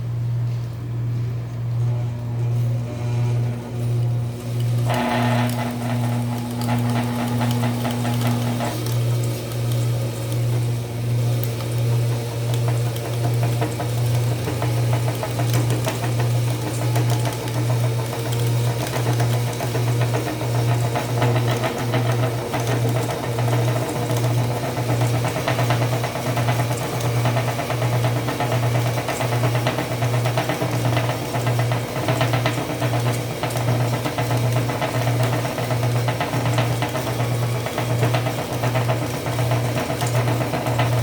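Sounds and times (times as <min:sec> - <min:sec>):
faint rattling whir: 0:00.0 - 0:41.0
electric motor humming: 0:01.7 - 0:25.4.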